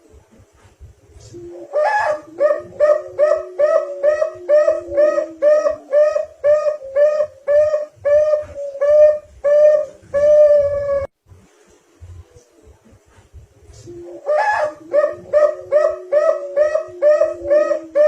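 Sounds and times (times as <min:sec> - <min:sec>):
dove cooing: 0:01.1 - 0:11.1, 0:13.7 - 0:18.0.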